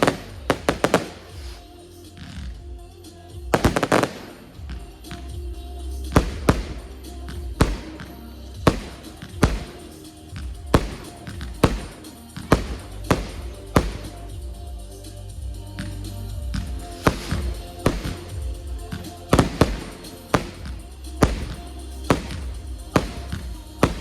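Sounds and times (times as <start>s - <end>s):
fireworks bangs: 0.0s - 1.7s, 3.5s - 4.8s, 6.2s - 6.9s, 7.6s - 14.3s, 16.9s - 24.0s
music track: 0.0s - 24.0s.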